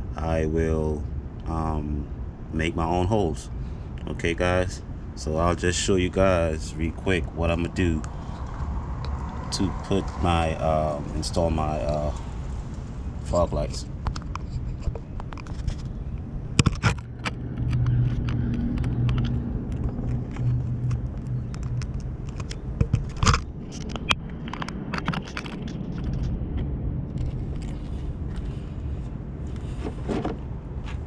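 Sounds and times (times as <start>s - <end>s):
vehicle engine running: 3.6s - 25.5s
sharp knocks and scrapes: 13.6s - 26.3s, 27.2s - 31.0s.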